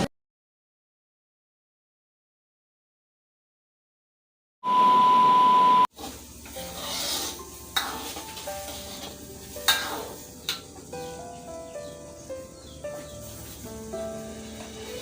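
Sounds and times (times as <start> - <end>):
electronic beep: 4.6 - 5.9
burst of hiss: 5.9 - 10.4
soft background music: 6.1 - 15.0.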